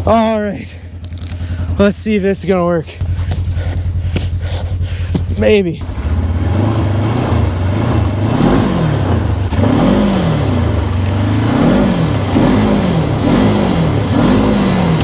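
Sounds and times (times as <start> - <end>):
tires spinning in snow: 0.0 - 15.0
engine revving up and down: 3.0 - 15.0.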